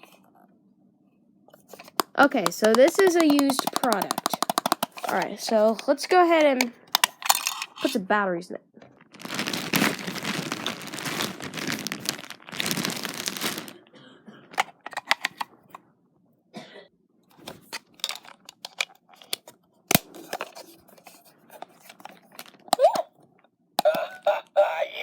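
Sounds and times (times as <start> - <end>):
packaging crinkling: 1.7 - 7.9, 8.9 - 13.9, 14.5 - 15.5, 17.8 - 22.9.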